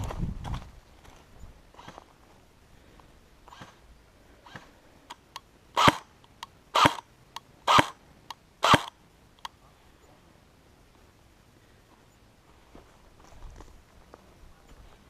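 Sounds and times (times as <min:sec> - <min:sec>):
sharp clicks: 0:04.5 - 0:09.6
airsoft gun shots: 0:05.8 - 0:06.0, 0:06.8 - 0:07.0, 0:07.7 - 0:08.0, 0:08.6 - 0:08.9.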